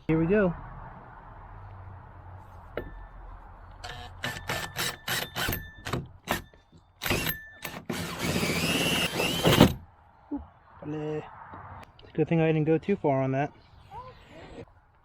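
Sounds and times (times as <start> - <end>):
power drill cutting into plastic: 3.8 - 5.6, 7.0 - 9.8.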